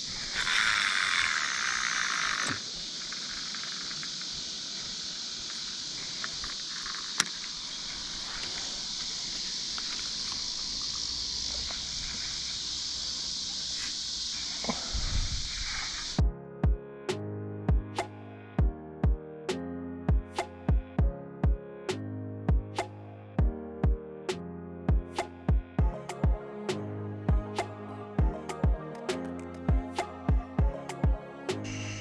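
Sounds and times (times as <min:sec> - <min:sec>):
night insects chorus: 0:00.0 - 0:16.2.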